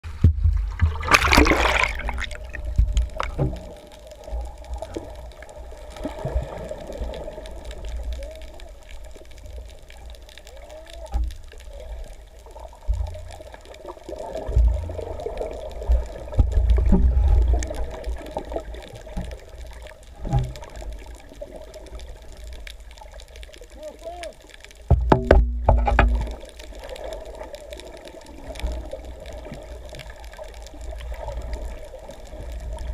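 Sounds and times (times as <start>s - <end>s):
water splash: 0.0s - 8.1s
water rumbling: 0.0s - 32.9s.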